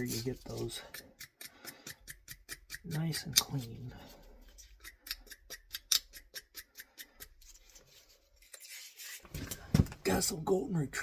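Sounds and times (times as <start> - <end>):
soft scrubbing: 0.0 - 0.9
scraping copper pipe: 0.0 - 9.6.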